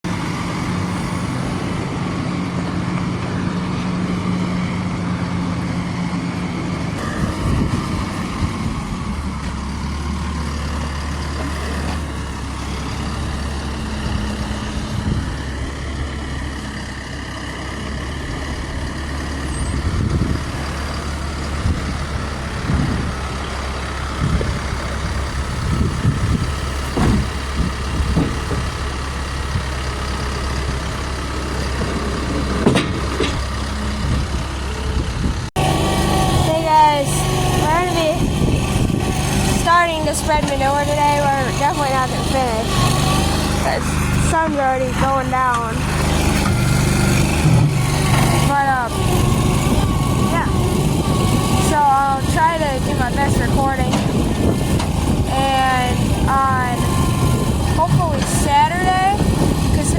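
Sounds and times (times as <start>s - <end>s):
vehicle engine running: 0.0s - 59.9s
knocks and clunks: 25.7s - 29.7s, 31.4s - 34.5s.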